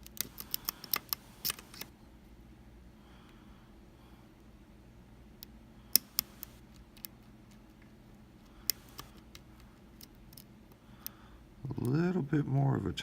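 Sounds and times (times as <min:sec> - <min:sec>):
lock pick clicking in lock: 0:00.0 - 0:01.9.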